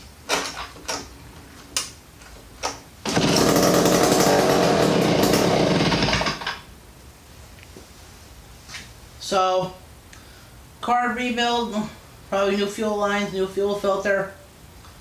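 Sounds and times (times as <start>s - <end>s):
chainsaw engine pull starting: 3.0s - 6.6s
chainsaw engine running: 3.0s - 6.6s.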